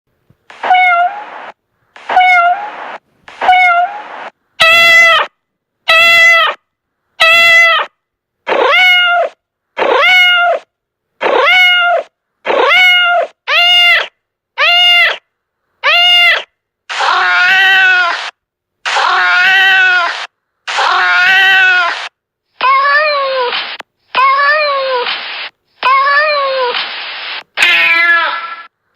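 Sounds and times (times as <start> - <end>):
cat meowing: 0.6 - 1.3, 8.5 - 10.7, 11.3 - 15.2, 15.8 - 18.3, 18.9 - 23.6, 24.2 - 25.2, 25.8 - 26.8, 27.6 - 28.7.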